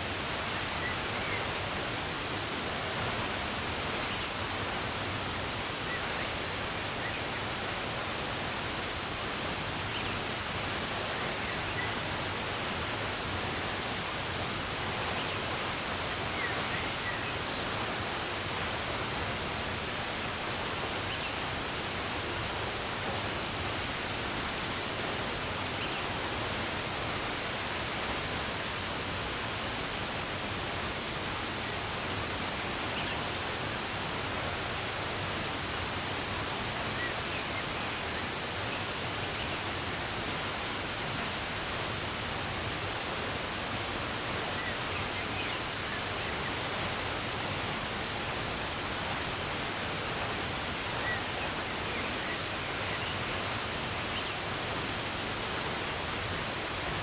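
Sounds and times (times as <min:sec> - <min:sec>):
running water rushing: 0:00.0 - 0:57.0.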